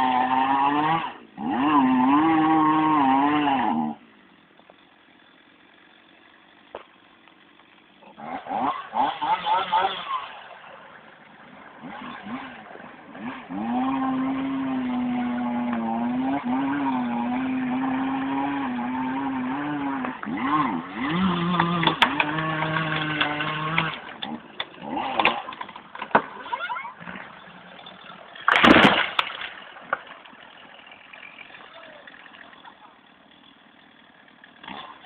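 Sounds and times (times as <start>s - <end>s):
tractor diesel engine revving: 0.0s - 4.1s, 7.4s - 35.0s
loud crash with sharp cracks: 28.5s - 30.1s.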